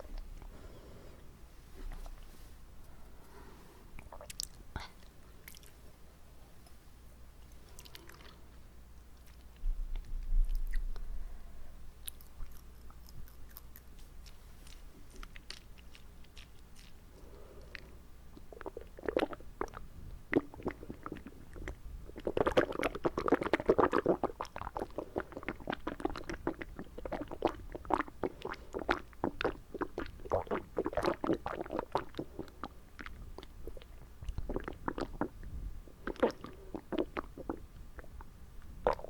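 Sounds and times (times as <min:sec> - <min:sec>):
wet mouth clicks and smacks: 0:04.0 - 0:05.8, 0:09.2 - 0:11.1, 0:12.0 - 0:17.0.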